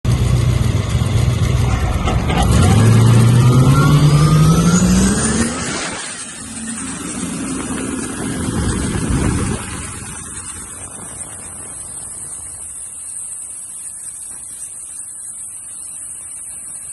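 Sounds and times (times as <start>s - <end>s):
engine accelerating: 0.1s - 12.2s
turbo whine: 0.1s - 16.9s.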